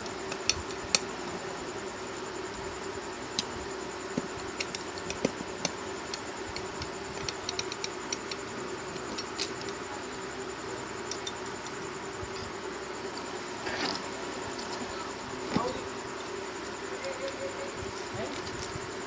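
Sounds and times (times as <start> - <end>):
steady low hum: 0.0 - 19.0
circuit board clicks and taps: 4.2 - 8.4.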